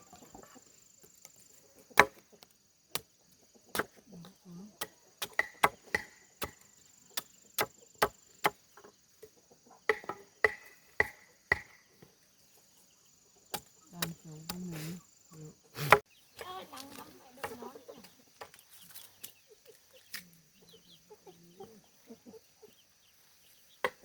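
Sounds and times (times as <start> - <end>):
blade chopping bamboo: 2.0 - 2.2, 3.7 - 4.0, 5.2 - 6.6.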